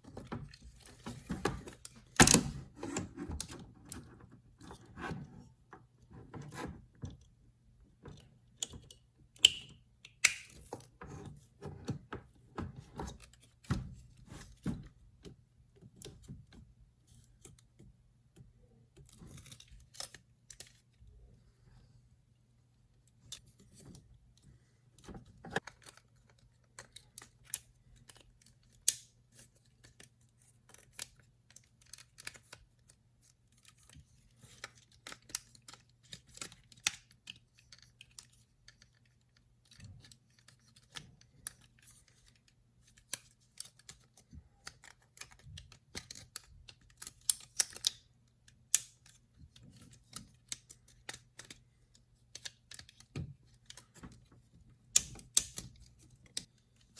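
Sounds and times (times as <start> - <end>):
plastic parts clicking and snapping: 0.1 - 4.8, 8.0 - 21.0, 25.0 - 56.9.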